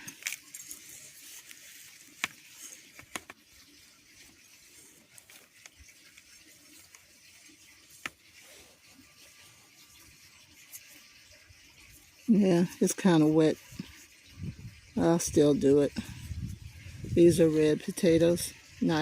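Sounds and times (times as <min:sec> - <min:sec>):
hands rustling in soil: 0:00.0 - 0:09.6.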